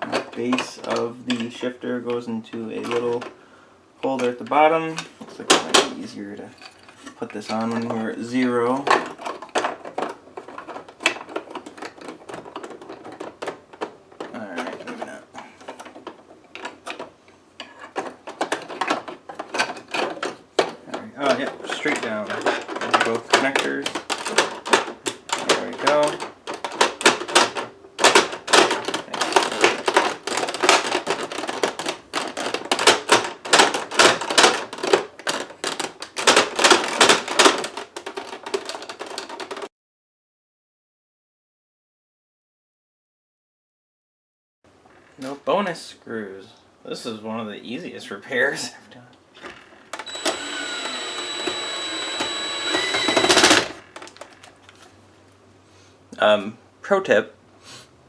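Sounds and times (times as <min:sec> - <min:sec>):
plastic toy parts clicking: 0:21.3 - 0:39.7, 0:50.0 - 0:54.6
small electric motor whirring: 0:50.0 - 0:53.8.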